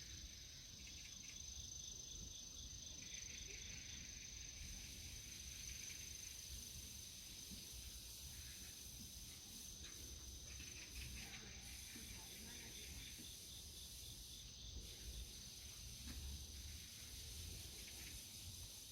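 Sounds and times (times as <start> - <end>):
high insect trill: 0.0 - 18.9
rhythmic insect chirp: 0.0 - 18.9.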